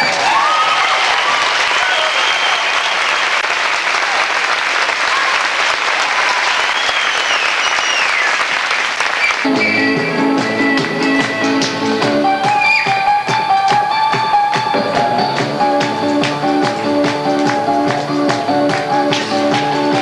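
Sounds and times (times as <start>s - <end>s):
high whoops: 0.0s - 3.4s, 5.0s - 8.4s
audience applauding: 0.0s - 20.0s.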